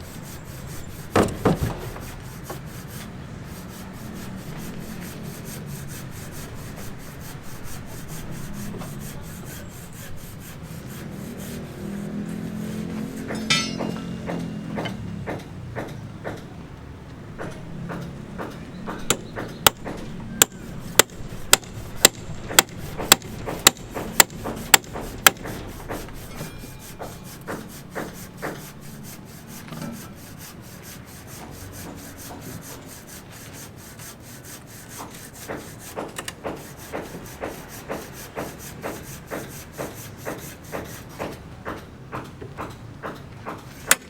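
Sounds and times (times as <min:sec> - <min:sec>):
scraping and rubbing: 0:00.0 - 0:14.9, 0:18.9 - 0:41.2
hammer striking: 0:12.4 - 0:16.5, 0:17.4 - 0:29.2.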